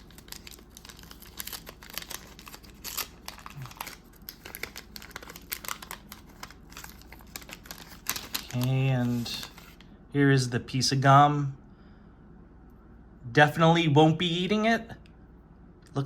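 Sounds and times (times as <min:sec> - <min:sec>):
wax paper tearing and crinkling: 0:00.0 - 0:09.8.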